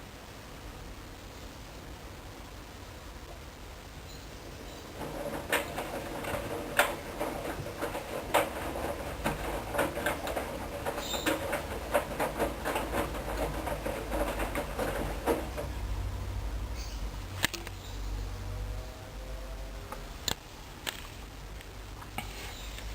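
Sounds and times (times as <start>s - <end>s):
washing machine motor hum: 3.9s - 20.2s
laundry tumbling in washing machine: 4.4s - 17.7s.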